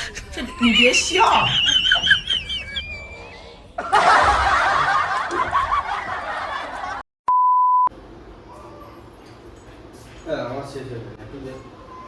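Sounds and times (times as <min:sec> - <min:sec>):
laughter sound effect: 0:00.0 - 0:03.0, 0:03.8 - 0:07.0
censor bleep: 0:07.3 - 0:07.9.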